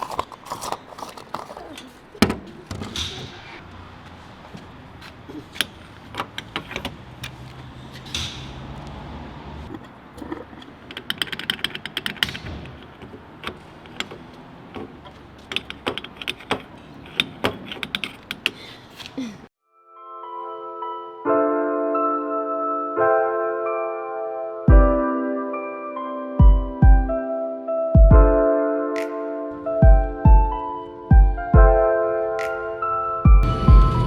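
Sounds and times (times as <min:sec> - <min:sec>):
small hard objects clicking: 0:00.0 - 0:01.9.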